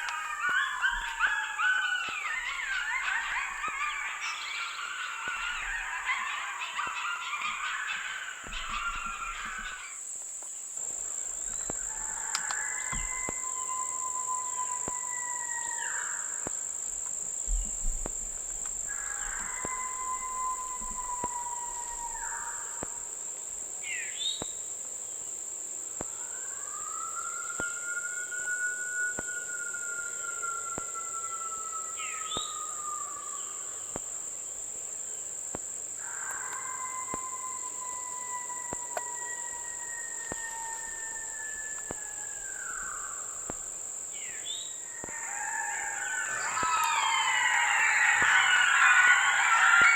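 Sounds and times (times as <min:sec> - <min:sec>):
coyote howling: 0:00.0 - 0:10.0, 0:11.9 - 0:16.4, 0:18.8 - 0:23.1, 0:26.1 - 0:34.0, 0:36.0 - 0:49.9
insect chorus: 0:00.0 - 0:49.9
bird chirps: 0:45.9 - 0:49.9.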